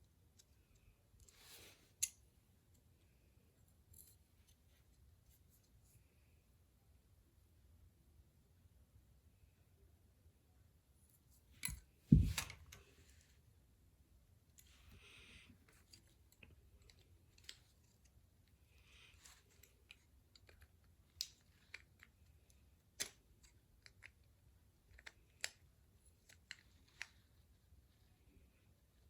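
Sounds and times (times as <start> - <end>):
plastic toy parts clicking: 23.0 - 27.2.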